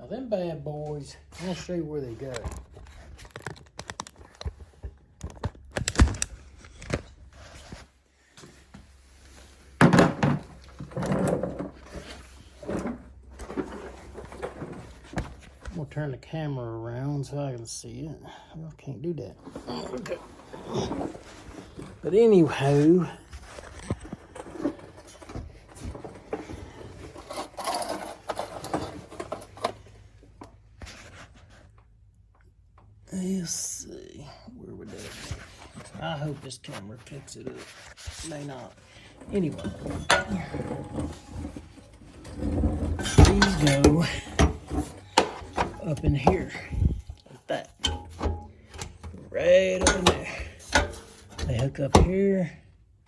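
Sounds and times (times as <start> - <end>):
handling clicks and knocks: 2.3 - 7.2, 39.1 - 52.2
metal parts knocking and clunking: 9.8 - 15.7, 19.5 - 30.0, 39.1 - 52.2
rustling: 34.8 - 52.0.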